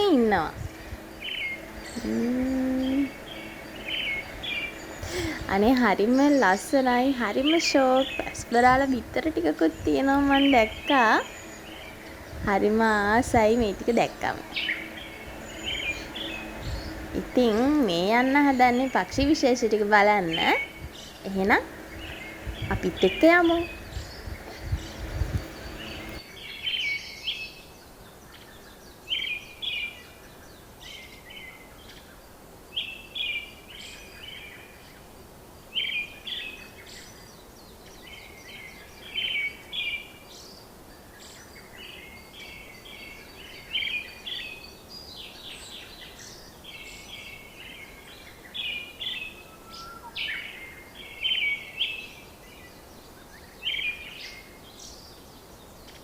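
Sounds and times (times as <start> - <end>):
birds chirping: 0.0 - 26.2
low steady hum: 0.0 - 26.2.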